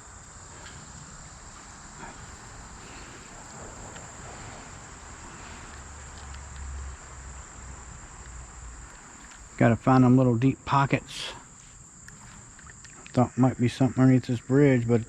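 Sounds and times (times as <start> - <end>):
high-pitched insect drone: 0.0 - 15.0
faint rustles and ticks: 0.1 - 9.6, 11.4 - 13.2.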